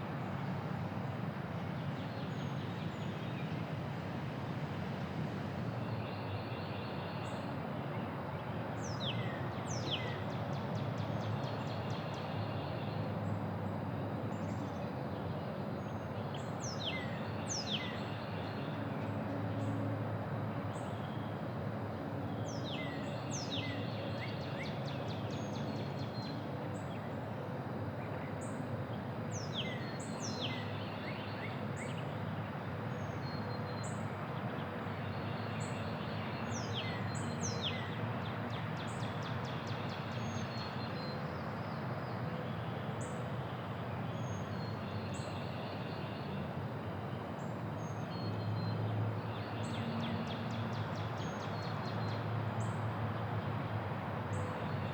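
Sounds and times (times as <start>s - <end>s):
songbirds chirping and trilling: 14.4s - 18.9s, 20.8s - 53.7s.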